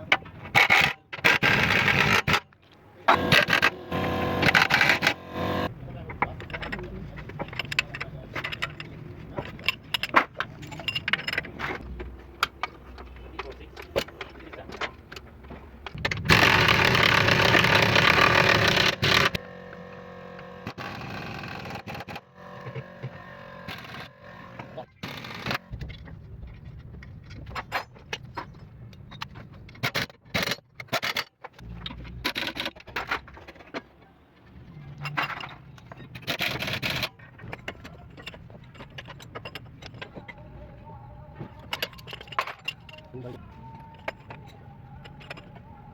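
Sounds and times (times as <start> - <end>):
tools clinking on car parts: 6.1 - 16.0, 34.9 - 40.6, 41.4 - 45.9.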